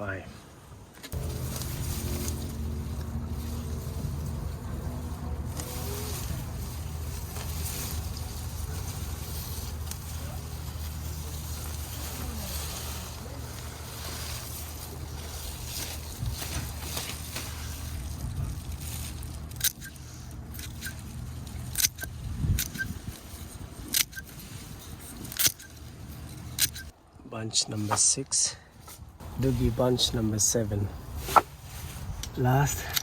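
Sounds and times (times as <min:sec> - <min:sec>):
low engine hum: 0:01.2 - 0:22.3.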